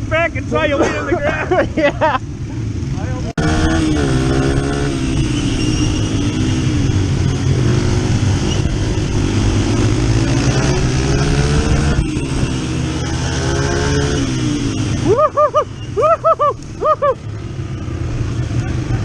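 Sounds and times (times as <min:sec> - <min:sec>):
dirt bike engine revving: 0:02.6 - 0:15.9.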